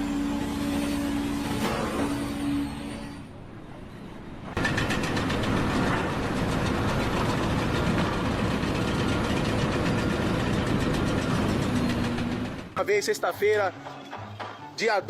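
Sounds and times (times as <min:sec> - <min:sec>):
engine running: 0:04.4 - 0:12.8.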